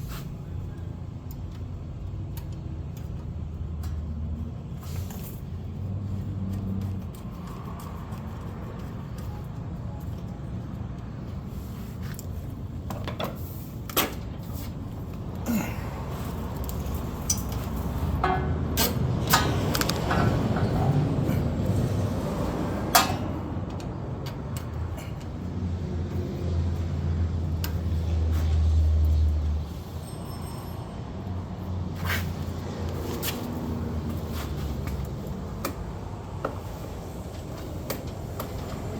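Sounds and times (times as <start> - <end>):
clicks and metallic knocks: 17.2 - 21.0.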